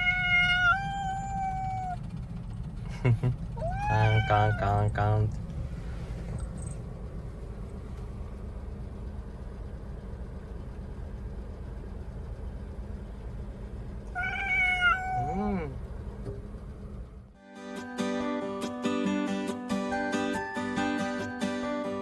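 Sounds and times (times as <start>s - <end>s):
cat meowing: 0.0s - 2.0s, 3.5s - 4.9s, 14.1s - 15.8s
low background rumble: 0.0s - 17.4s.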